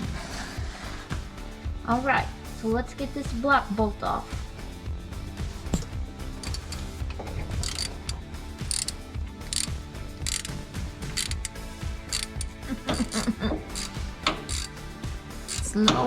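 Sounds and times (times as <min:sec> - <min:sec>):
ratchet wrench clicking: 0:05.8 - 0:14.8, 0:15.4 - 0:15.7.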